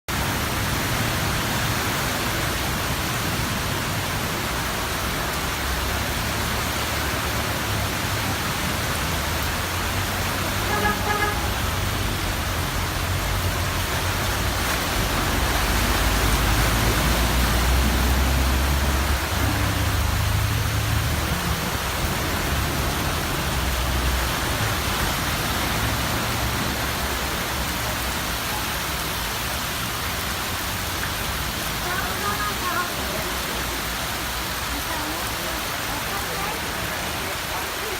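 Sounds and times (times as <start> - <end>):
rain and running water: 0.1 - 37.9
traffic rumbling past: 0.1 - 37.9
car horn toot: 10.6 - 11.6.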